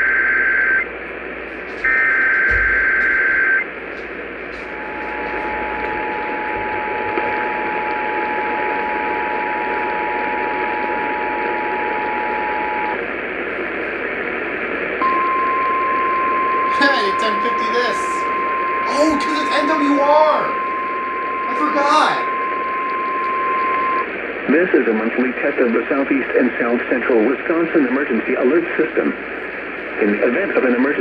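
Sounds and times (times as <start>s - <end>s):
radio static hiss: 0.0s - 31.0s
two-tone attention signal: 1.8s - 3.6s, 15.0s - 24.1s.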